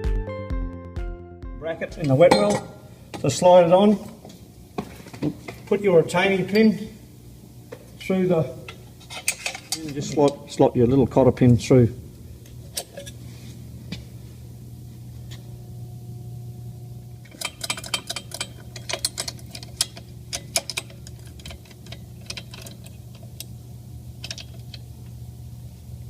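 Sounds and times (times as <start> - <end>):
steady low hum: 1.6 - 26.0
metal bracket and pins clinking: 2.0 - 3.4, 8.7 - 10.5, 12.7 - 13.2, 17.2 - 23.5, 24.2 - 24.9.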